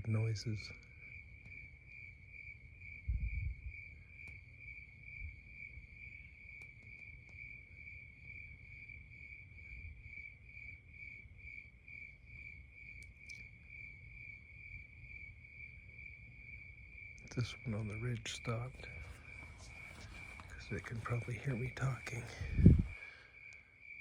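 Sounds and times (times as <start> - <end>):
crickets chirping: 0.0 - 24.0
faint clicks: 12.9 - 13.5.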